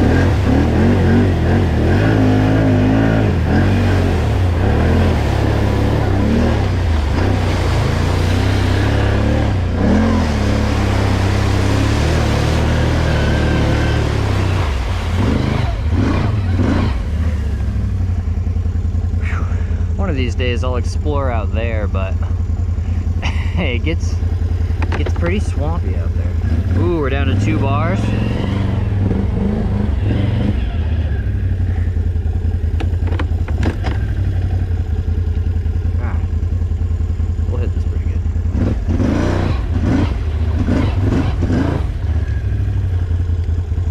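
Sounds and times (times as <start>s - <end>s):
electric dirt bike rumble: 0.0s - 20.3s, 21.5s - 43.9s
bike rattling clacks: 32.7s - 34.6s.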